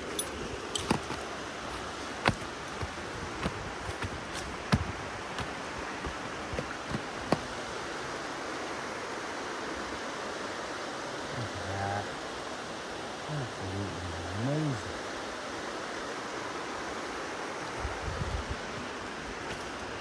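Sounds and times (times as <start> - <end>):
stream flowing: 0.0 - 10.4.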